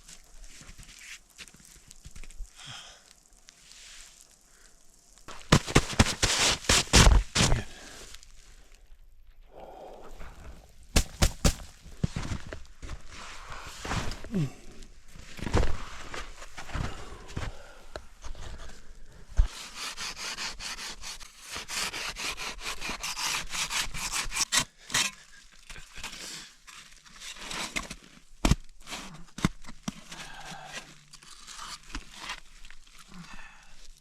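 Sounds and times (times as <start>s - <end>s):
tool scraping packed snow: 5.3s - 8.0s, 11.0s - 12.4s, 13.1s - 14.3s, 19.4s - 25.2s, 26.8s - 28.2s.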